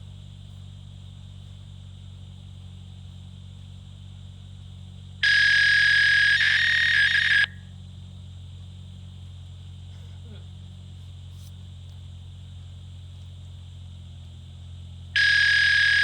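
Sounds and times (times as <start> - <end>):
fax handshake tone and screech: 5.2 - 7.6, 15.2 - 16.0
phone line hum: 5.2 - 7.6, 15.2 - 16.0.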